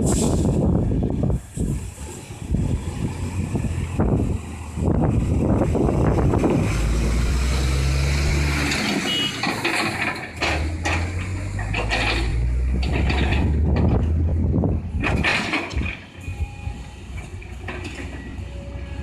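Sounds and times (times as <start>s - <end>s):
excavator engine drone: 0.1s - 19.0s
rattle and grinding: 8.6s - 14.4s, 15.0s - 16.1s.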